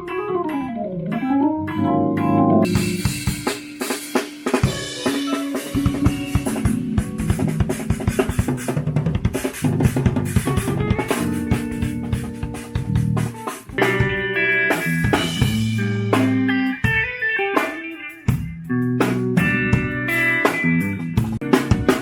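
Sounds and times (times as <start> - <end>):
sustained bass notes: 0.0 - 3.5, 5.8 - 8.6, 9.9 - 16.6
keyboard notes: 0.0 - 8.8
drum kit playing fills: 0.0 - 22.0.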